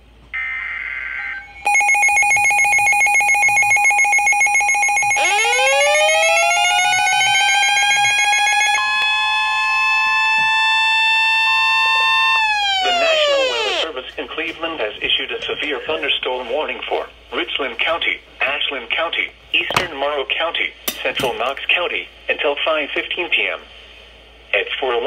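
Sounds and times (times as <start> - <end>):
rapidly pulsing electronic alarm: 0.4 - 13.9
two-tone attention signal: 1.2 - 5.8, 6.6 - 10.5
rising wailing tone: 5.2 - 13.9.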